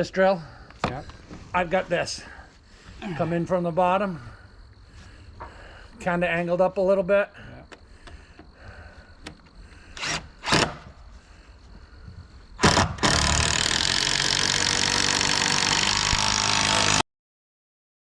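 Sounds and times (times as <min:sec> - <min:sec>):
cordless drill driving screw: 0:10.0 - 0:10.8, 0:12.6 - 0:17.0.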